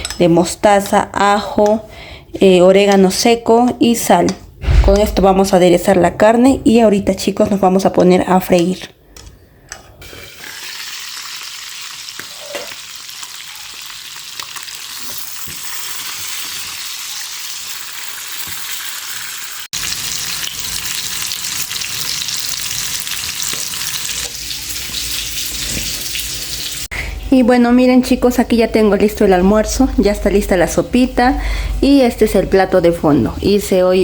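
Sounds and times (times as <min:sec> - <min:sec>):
meat sizzling in hot oil: 0:10.0 - 0:26.9.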